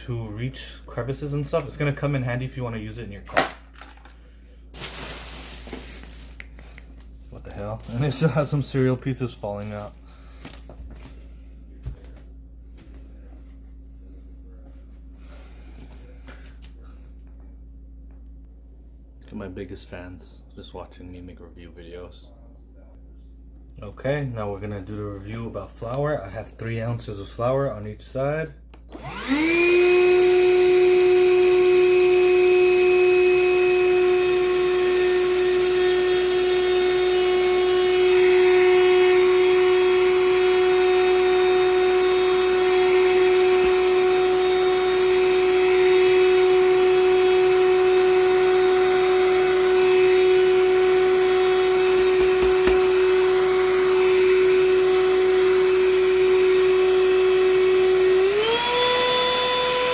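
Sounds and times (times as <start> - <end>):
handheld vacuum running: 4.8 - 6.7, 7.3 - 11.2, 28.9 - 59.9.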